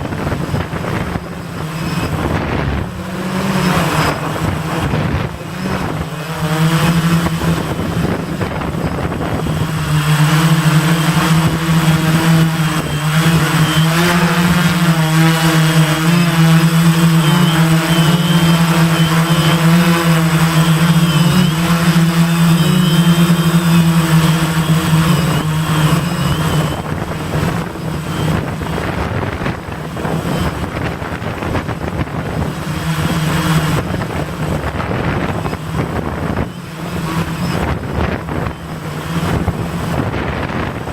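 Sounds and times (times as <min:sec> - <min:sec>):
drone motors humming: 0:00.0 - 0:40.9.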